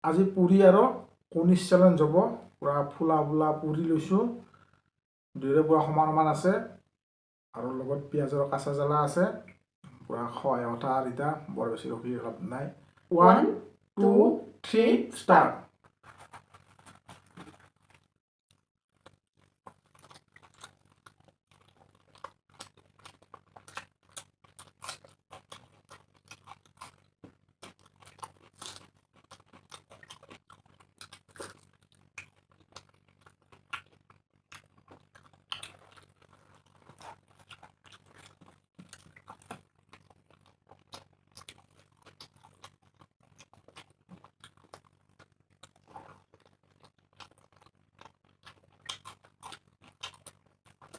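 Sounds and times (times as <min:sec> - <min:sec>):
food crunching: 0:15.6 - 0:50.9
wet chewing and mouth smacks: 0:15.8 - 0:18.2, 0:18.9 - 0:50.9.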